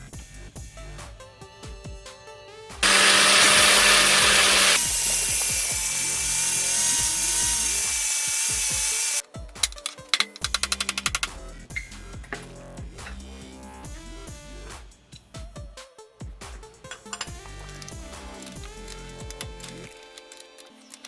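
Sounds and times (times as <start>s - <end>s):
electronic background music: 0.0s - 21.0s
handheld power tool whining: 2.8s - 9.2s.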